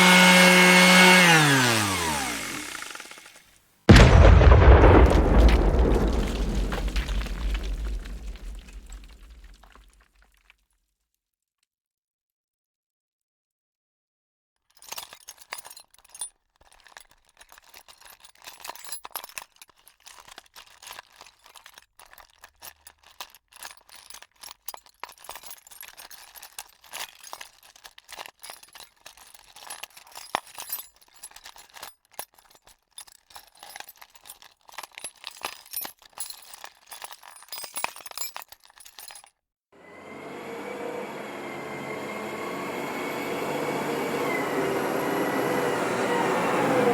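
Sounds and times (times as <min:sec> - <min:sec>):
small hard objects clinking: 0:04.2 - 0:10.0, 0:16.6 - 0:39.3.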